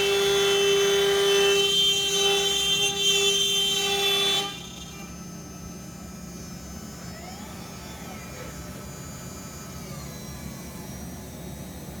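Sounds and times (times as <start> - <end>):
dust collection system whirring: 4.5 - 11.2.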